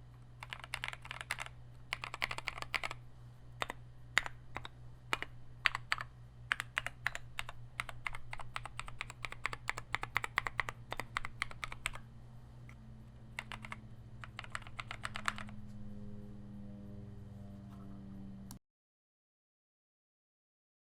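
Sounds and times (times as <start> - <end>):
fast typing on mechanical keyboard: 0.4 - 3.0, 3.6 - 12.0, 13.3 - 15.6.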